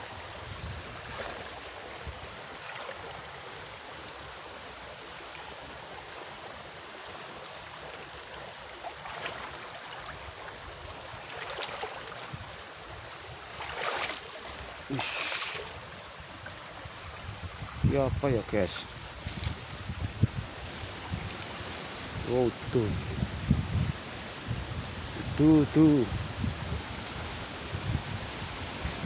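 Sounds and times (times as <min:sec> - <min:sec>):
river water rushing: 0:00.0 - 0:25.4
sharp rustles: 0:14.9 - 0:15.8.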